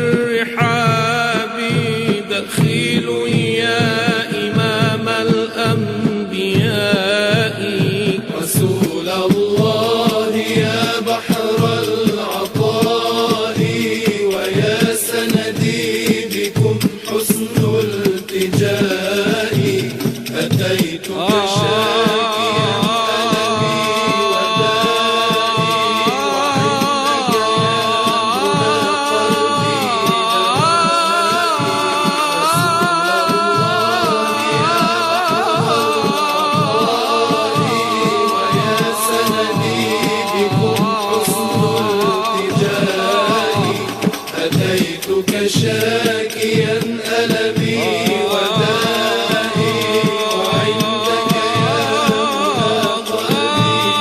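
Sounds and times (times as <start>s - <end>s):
steady percussive beat: 0.0s - 54.0s
voices chanting devotional song: 0.0s - 54.0s.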